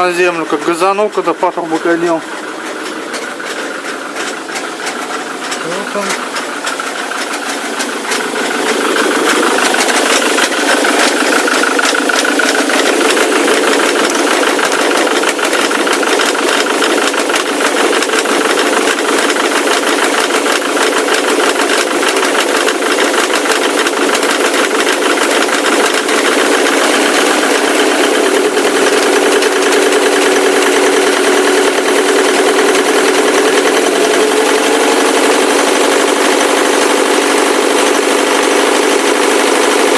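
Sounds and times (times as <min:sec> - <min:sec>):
diesel engine knocking: 0:00.0 - 0:39.9.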